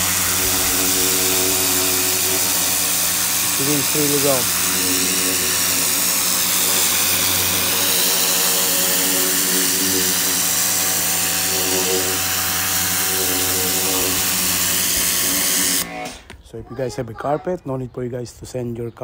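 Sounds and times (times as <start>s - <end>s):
high-pressure spray hissing on carpet: 0.0s - 15.8s
pressure washer motor humming: 0.0s - 16.3s.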